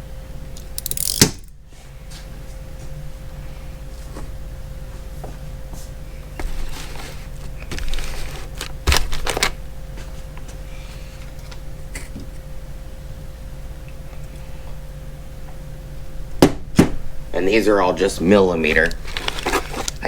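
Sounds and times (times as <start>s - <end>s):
steady low hum: 0.0s - 20.0s
ratcheting wrenches clicking: 0.6s - 1.4s.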